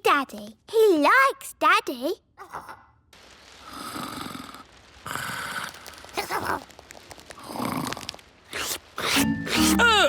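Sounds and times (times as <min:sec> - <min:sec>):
cartoon rasping breaths: 0:08.5 - 0:10.0.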